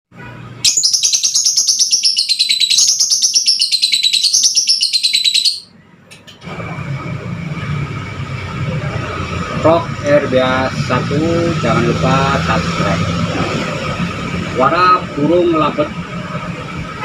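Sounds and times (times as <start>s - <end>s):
lovebird chattering trill: 0.6s - 5.7s
steady low hum: 5.7s - 17.0s.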